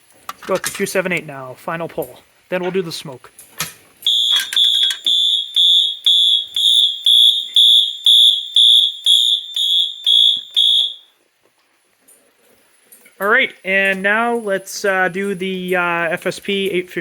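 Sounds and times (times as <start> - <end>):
fire alarm horn pulsing: 4.0 - 11.1.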